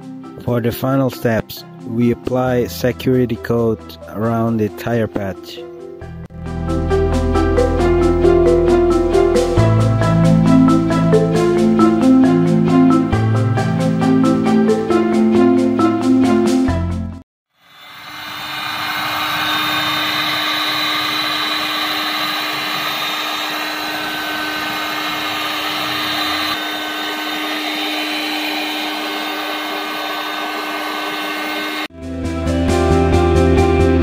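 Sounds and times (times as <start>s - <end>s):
electric workshop tool humming: 17.5s - 31.9s.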